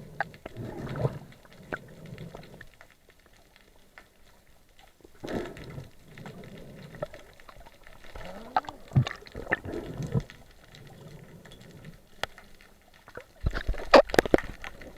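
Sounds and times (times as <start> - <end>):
water gurgling and bubbling: 0.0 - 2.8, 5.0 - 12.1.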